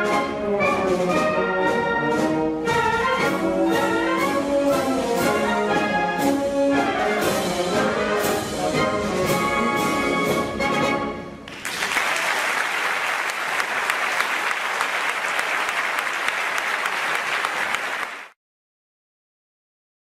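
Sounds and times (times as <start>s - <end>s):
orchestral brass music: 0.0s - 11.5s
audience clapping: 11.5s - 18.4s.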